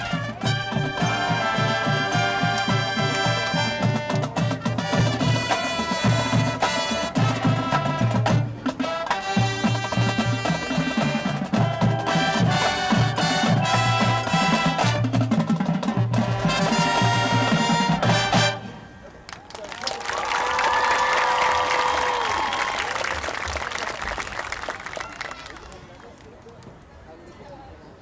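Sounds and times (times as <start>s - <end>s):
marching drums: 0.0s - 18.7s
marching band brass: 0.0s - 19.2s.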